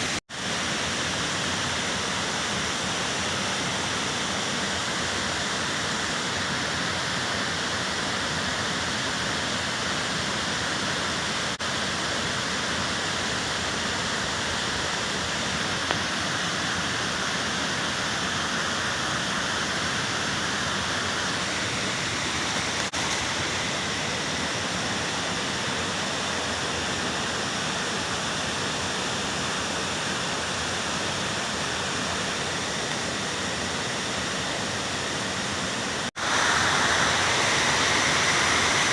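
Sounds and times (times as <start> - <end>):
waterfall pouring: 36.1 - 38.9.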